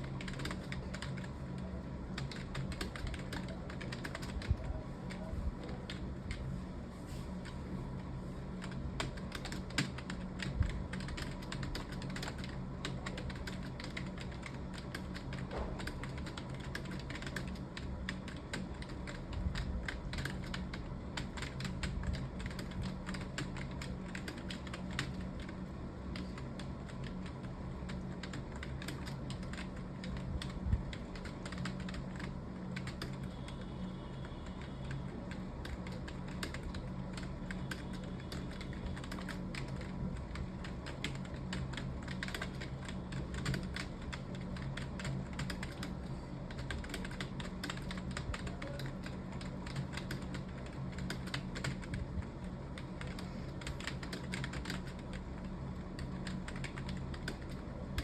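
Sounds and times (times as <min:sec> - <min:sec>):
fast typing on keyboard: 0:00.0 - 0:06.4, 0:08.5 - 0:58.0.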